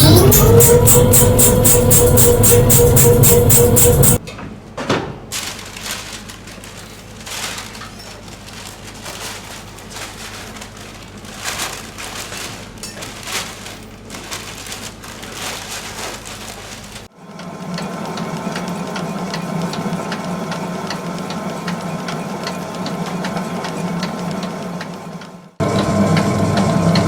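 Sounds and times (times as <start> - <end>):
mill machinery humming: 0.0 - 4.2, 17.1 - 27.0
rustling and crackling: 5.3 - 17.1.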